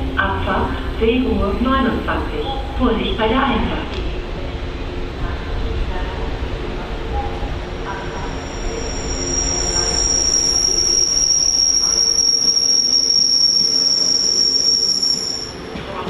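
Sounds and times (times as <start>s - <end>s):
train rolling rumble: 0.0s - 16.0s
train brakes squealing: 7.9s - 16.0s.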